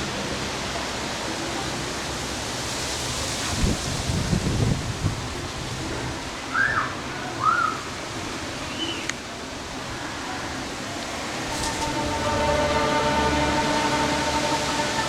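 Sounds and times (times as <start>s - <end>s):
steady background hiss: 7.4s - 15.0s
music: 11.5s - 15.0s.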